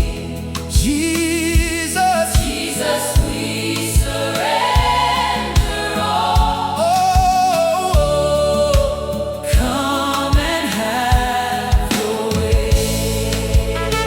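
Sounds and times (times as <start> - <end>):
kick drum beat: 0.0 - 14.0
voices singing held notes: 0.0 - 14.0.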